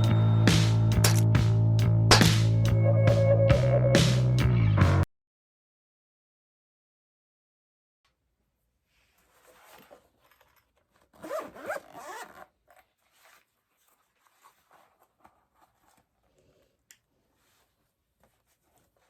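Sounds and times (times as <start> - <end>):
handling and rustling: 8.9 - 19.0
zipper pulled open: 9.2 - 16.7.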